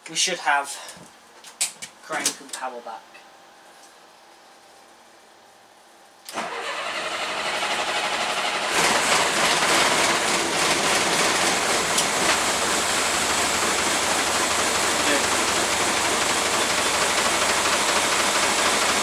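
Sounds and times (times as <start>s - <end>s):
diesel engine running: 6.3s - 19.0s
starter cranking engine: 6.3s - 19.0s.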